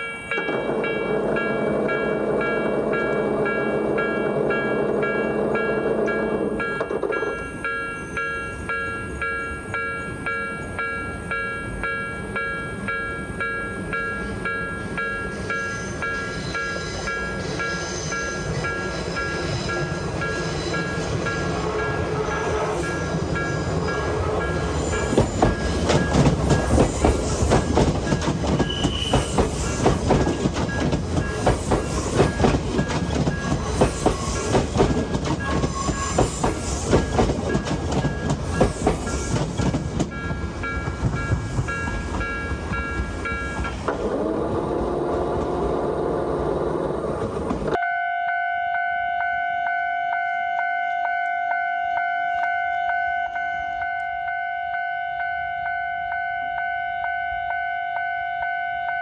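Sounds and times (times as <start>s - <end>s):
level-crossing warning bell: 0.0s - 43.8s, 47.8s - 59.0s
train wheels clacking on rails: 15.4s - 44.2s.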